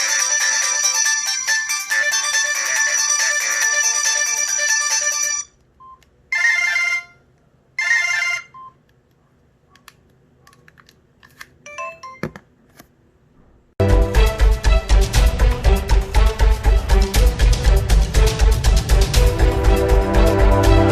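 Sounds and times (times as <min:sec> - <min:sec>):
polyphonic phone ringtone: 0:00.0 - 0:05.5, 0:06.3 - 0:07.2, 0:07.8 - 0:08.7.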